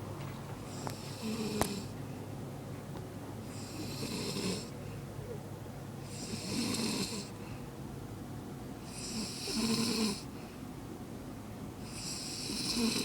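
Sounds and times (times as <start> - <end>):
steady low hum: 0.0 - 13.0
person snoring: 11.9 - 13.0.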